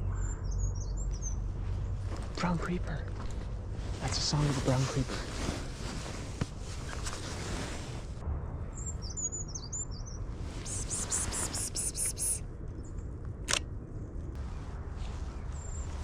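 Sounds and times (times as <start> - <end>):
high-pitched bird song: 0.0 - 1.4, 8.8 - 12.4
short hissing bursts: 10.6 - 12.4
sharp click: 13.4 - 13.7.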